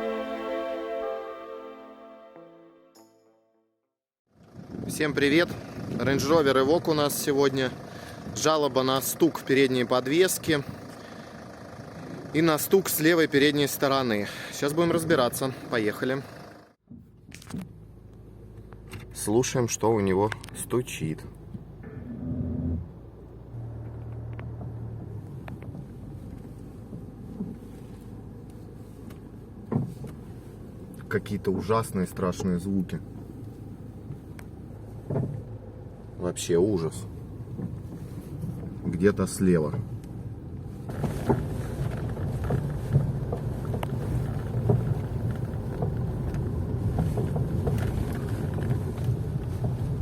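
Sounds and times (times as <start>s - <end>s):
road and drivetrain noise: 4.3s - 50.0s
suspension knocking: 40.9s - 49.9s.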